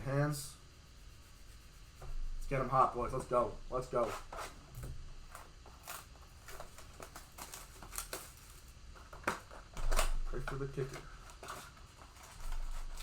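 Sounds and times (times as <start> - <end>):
packaging crinkling and tearing: 5.4 - 13.0.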